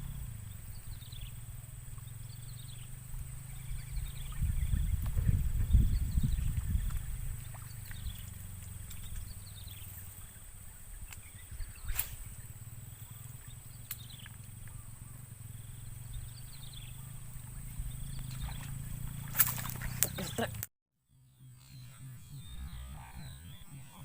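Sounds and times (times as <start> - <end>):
steady low rumble: 0.0 - 24.0.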